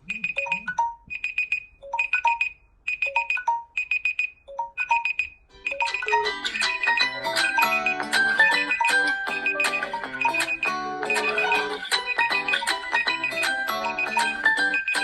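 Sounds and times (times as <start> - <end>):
fast melodic alarm tone: 0.0 - 1.2, 4.6 - 15.0
chiming phone alarm notes: 0.0 - 15.0.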